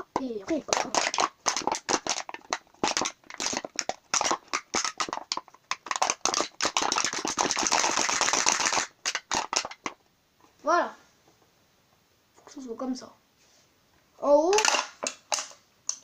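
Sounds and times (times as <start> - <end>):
aluminium can crackling: 0.0 - 10.0, 14.5 - 16.0.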